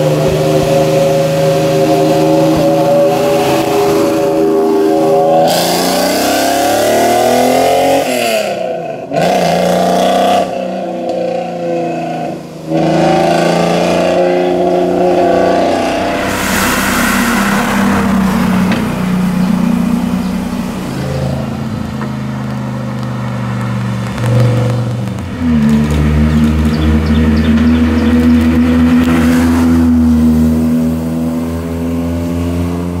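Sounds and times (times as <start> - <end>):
car engines revving: 0.0 - 33.0.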